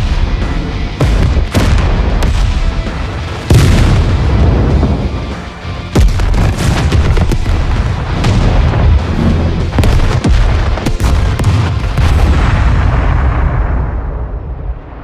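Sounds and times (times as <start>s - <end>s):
heavy explosion booms: 1.0s - 5.3s, 5.9s - 15.0s
sharp gunfire cracks: 9.8s - 12.6s.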